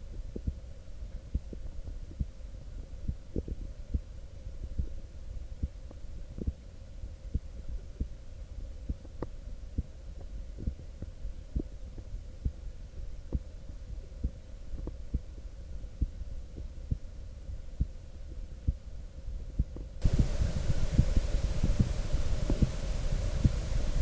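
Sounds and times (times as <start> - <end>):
heartbeat thumps: 0.0 - 0.7, 1.3 - 6.6, 8.8 - 24.0
steady low hum: 0.0 - 24.0
loud hiss: 20.0 - 24.0.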